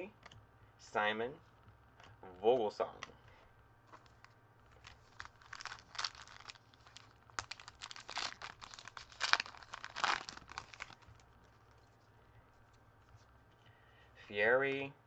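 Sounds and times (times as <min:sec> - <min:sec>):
foil wrapper crinkling: 0:03.9 - 0:11.3.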